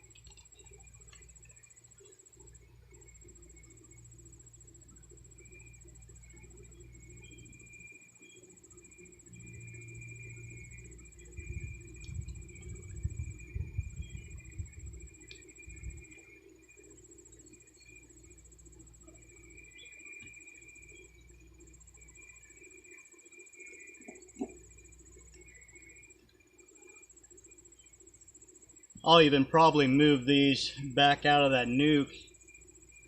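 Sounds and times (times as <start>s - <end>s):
crickets trilling: 0.0s - 33.0s
honeybees humming: 0.0s - 33.0s
low rumble on microphone: 10.9s - 16.1s.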